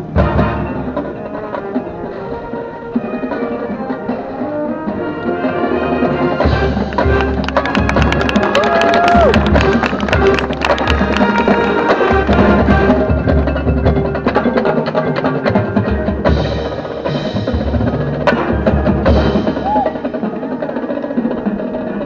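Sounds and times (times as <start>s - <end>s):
rapid drum strikes: 6.4s - 22.0s.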